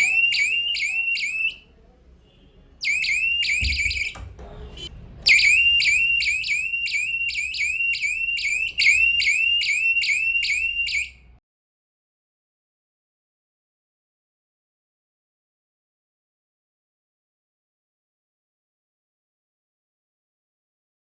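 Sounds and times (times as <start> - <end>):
shrill electronic alarm chirping: 0.0 - 1.6, 2.8 - 11.2
thump: 3.6 - 4.6.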